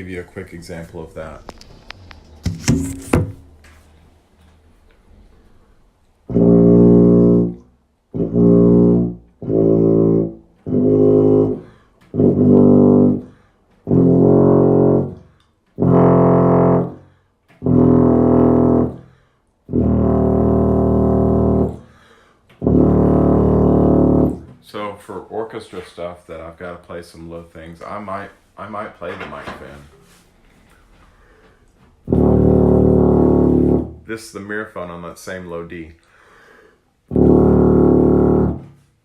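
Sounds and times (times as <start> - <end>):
tuba playing low notes: 6.2 - 24.6, 32.0 - 34.1, 37.1 - 38.9
breaths between notes: 11.6 - 12.0, 13.3 - 13.8, 17.0 - 17.4, 19.0 - 19.5, 21.8 - 22.5, 30.9 - 31.8, 36.0 - 37.0.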